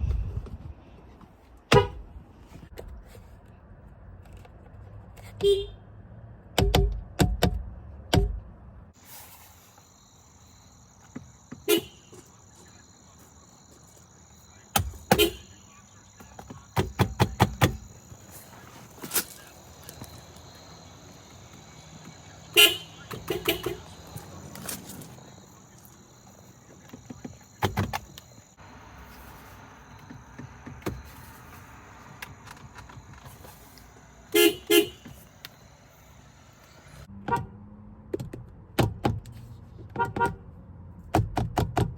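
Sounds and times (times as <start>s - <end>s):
car horn honking: 1.7s - 2.0s, 5.4s - 5.8s, 11.5s - 12.5s, 14.7s - 16.3s, 22.1s - 24.5s, 34.3s - 35.3s.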